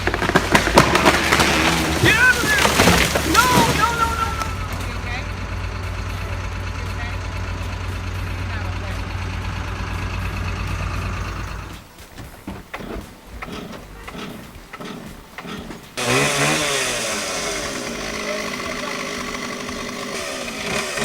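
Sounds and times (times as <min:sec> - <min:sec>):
chainsaw revving: 0:00.0 - 0:12.0, 0:12.7 - 0:21.0
low engine rumble: 0:00.0 - 0:21.0
scattered knocks: 0:11.6 - 0:16.6.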